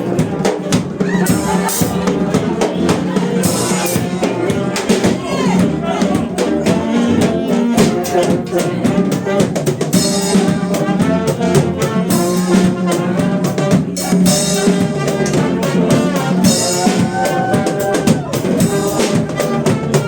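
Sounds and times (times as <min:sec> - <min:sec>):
brass band playing: 0:00.0 - 0:20.0
steady drum beat: 0:00.0 - 0:20.0.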